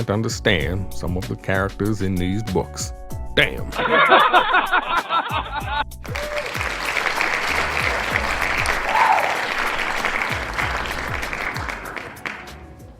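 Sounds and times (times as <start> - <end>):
music with thumping beat: 0.0 - 12.9
audience applause: 6.0 - 12.6.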